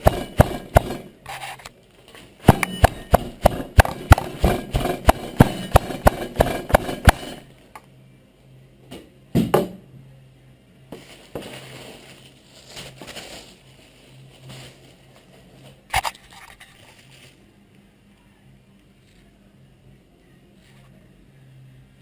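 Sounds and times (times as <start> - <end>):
meat being pounded: 0.0 - 1.1, 2.4 - 7.5
loud knock: 2.5 - 7.5.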